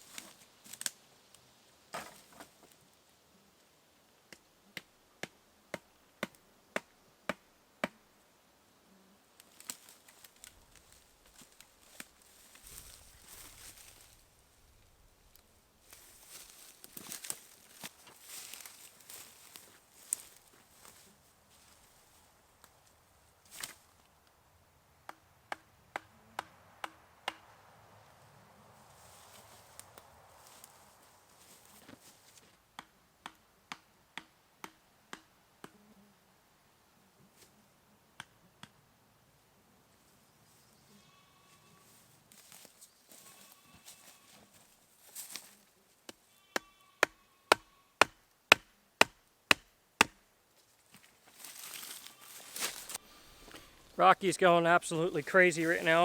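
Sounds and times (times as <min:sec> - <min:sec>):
short rustle: 0:51.0 - 0:56.0.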